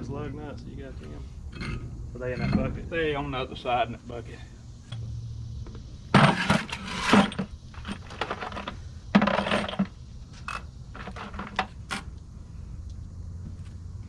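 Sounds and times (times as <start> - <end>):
steel lug nuts clinking: 1.0 - 2.7.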